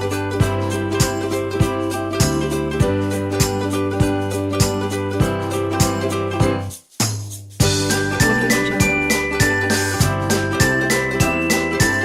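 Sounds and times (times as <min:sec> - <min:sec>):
music with steady beat: 0:00.0 - 0:12.0
bell-like tinkling melody: 0:07.6 - 0:12.0.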